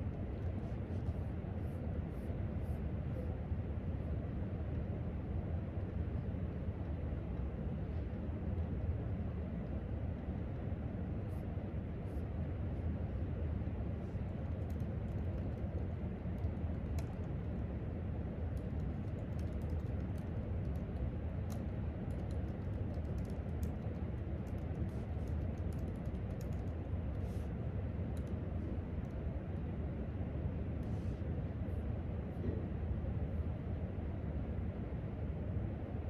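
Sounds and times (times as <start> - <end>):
low background rumble: 0.0 - 36.0
typing on laptop keyboard: 14.4 - 17.6, 18.5 - 26.9.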